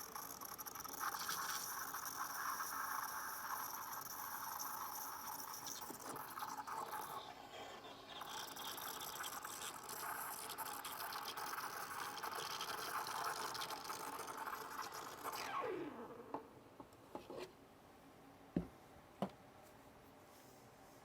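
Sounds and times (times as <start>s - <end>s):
espresso machine hissing: 0.0s - 10.7s
liquid sounds: 0.0s - 16.3s.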